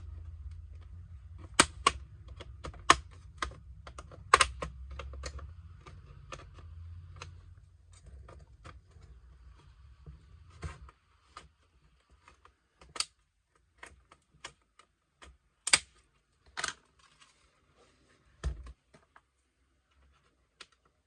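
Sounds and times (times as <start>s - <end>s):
plastic clips snapping loose: 0.5s - 7.4s, 13.8s - 16.8s.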